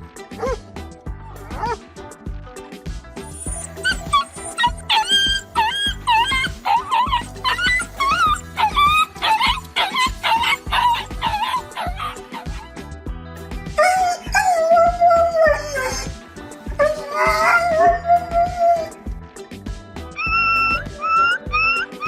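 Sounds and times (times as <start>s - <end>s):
background music: 0.0s - 22.0s
wild dogs yipping and whining: 0.4s - 0.6s, 1.4s - 1.8s, 3.2s - 12.8s, 13.8s - 19.0s, 20.2s - 22.0s.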